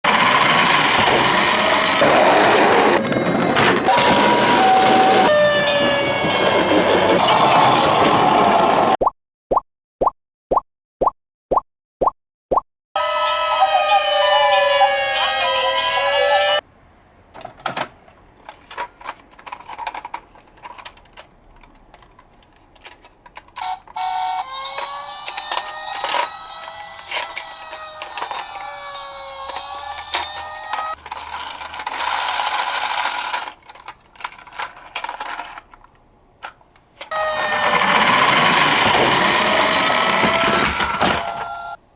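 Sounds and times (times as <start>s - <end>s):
two-tone ambulance siren: 0.1s - 8.7s, 13.0s - 16.6s, 23.6s - 31.0s, 37.1s - 41.8s
emergency vehicle siren: 0.1s - 9.0s, 13.0s - 16.6s, 23.6s - 31.0s, 37.1s - 41.8s.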